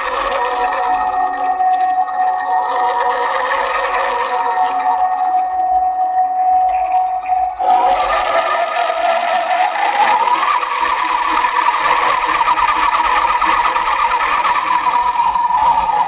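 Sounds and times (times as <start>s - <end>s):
toy car motor whining: 0.0s - 1.9s, 2.5s - 5.1s, 7.6s - 16.0s.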